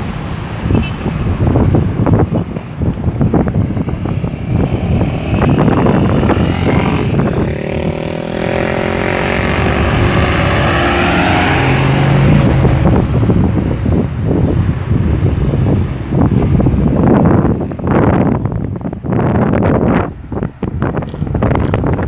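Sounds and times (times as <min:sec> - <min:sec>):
wind buffeting microphone: 0:00.0 - 0:22.0
vehicle engine passing: 0:03.7 - 0:13.6.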